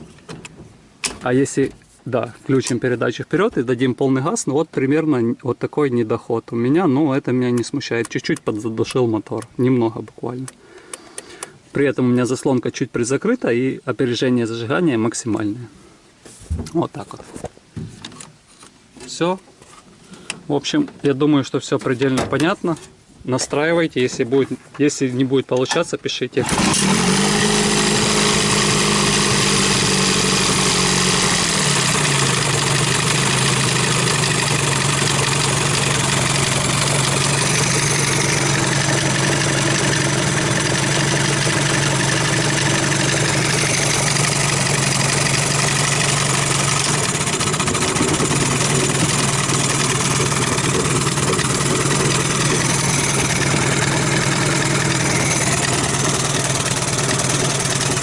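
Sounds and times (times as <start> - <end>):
outboard motor idling: 26.4 - 58.0.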